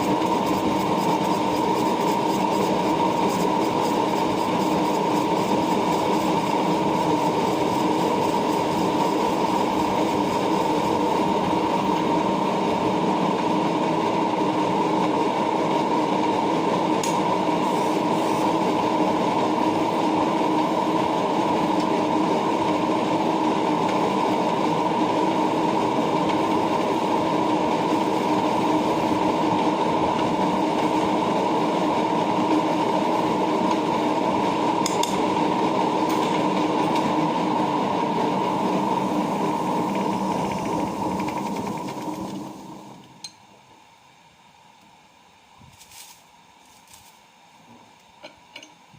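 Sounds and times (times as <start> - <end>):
lathe running with whine: 0.0 - 43.0.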